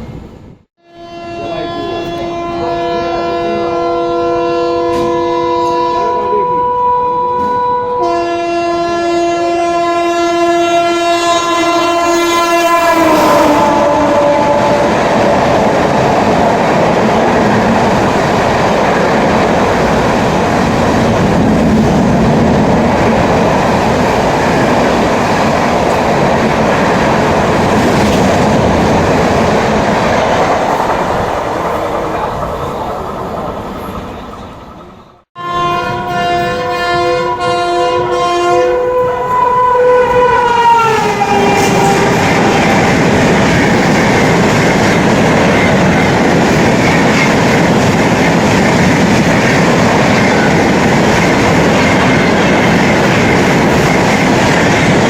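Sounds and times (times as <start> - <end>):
train horn: 0.8 - 15.6, 35.4 - 43.8
rush of train coaches: 1.3 - 55.0.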